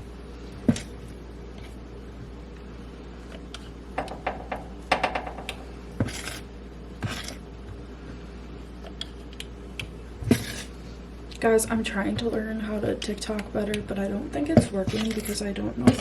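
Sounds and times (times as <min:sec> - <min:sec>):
utensil scraping dish: 0:10.3 - 0:10.7, 0:14.6 - 0:16.0
utensils clinking against dishes: 0:14.6 - 0:16.0.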